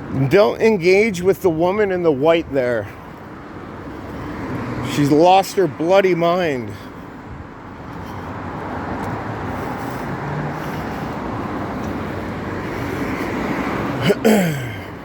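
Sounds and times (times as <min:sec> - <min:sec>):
vehicle passing: 0:00.0 - 0:15.0.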